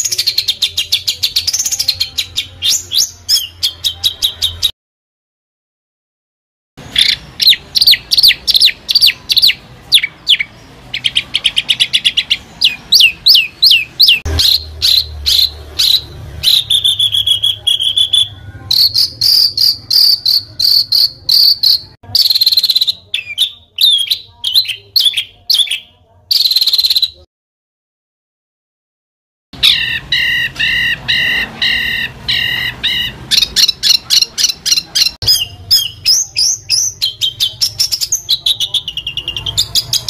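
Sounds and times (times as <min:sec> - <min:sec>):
songbird whistles and trills: 0:06.9 - 0:27.1.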